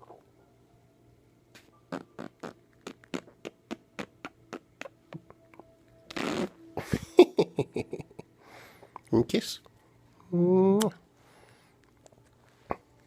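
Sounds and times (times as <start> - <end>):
buzzing raspberry pops: 1.6 - 5.4, 6.1 - 6.6
mouth clicks: 1.9 - 6.5.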